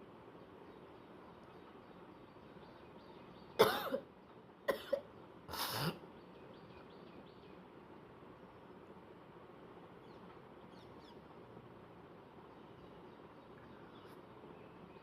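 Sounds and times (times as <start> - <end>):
person clearing throat: 3.6 - 4.0
person coughing: 3.6 - 4.0, 4.7 - 5.0.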